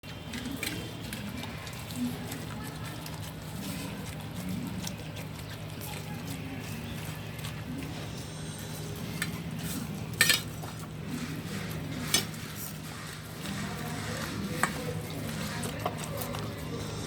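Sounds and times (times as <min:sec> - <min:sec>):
utensil clinking on metal pots: 0:09.0 - 0:16.8.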